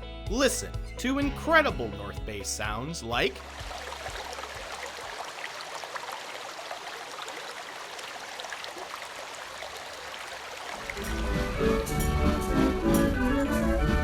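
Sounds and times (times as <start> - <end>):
running water: 1.5 - 12.4
orchestral music: 10.9 - 14.0.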